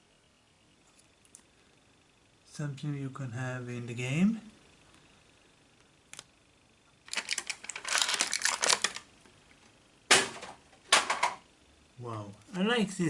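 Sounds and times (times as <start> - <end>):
packaging crinkling and clicking: 7.1 - 9.1.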